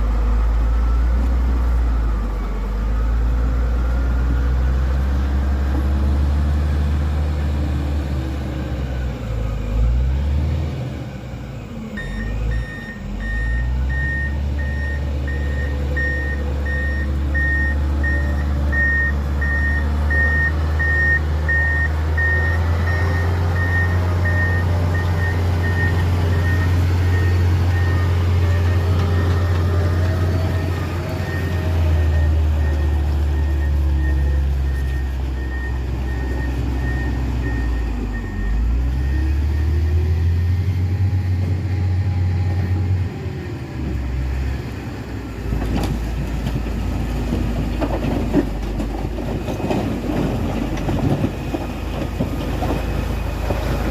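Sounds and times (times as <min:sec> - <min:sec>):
diesel engine rumbling: 0:00.0 - 0:53.9
reversing alarm beeping: 0:12.0 - 0:29.4, 0:30.3 - 0:39.8.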